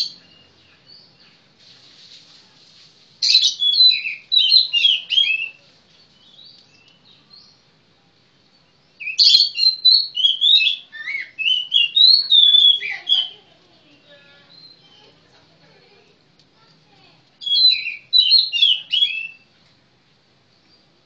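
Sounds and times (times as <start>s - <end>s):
bird singing whistled notes: 3.2s - 7.6s, 8.5s - 13.4s, 14.4s - 15.0s, 17.4s - 19.5s.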